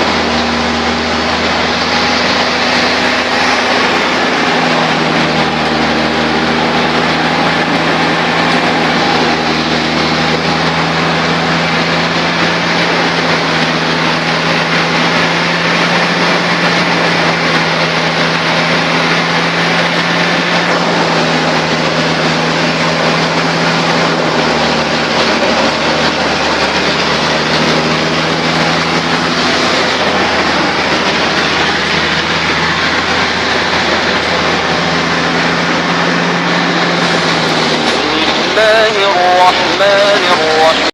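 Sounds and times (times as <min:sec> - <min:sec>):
machine humming and rushing: 0:00.0 - 0:40.9.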